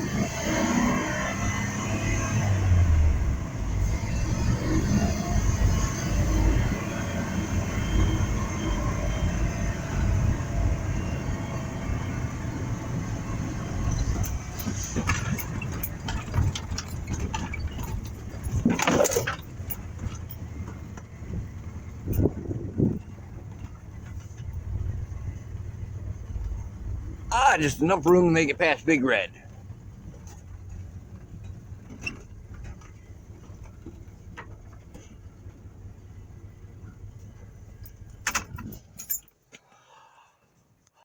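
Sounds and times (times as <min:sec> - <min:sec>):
truck engine rumbling: 0:00.0 - 0:39.5
rattles and knocks: 0:13.6 - 0:27.3, 0:29.5 - 0:39.4.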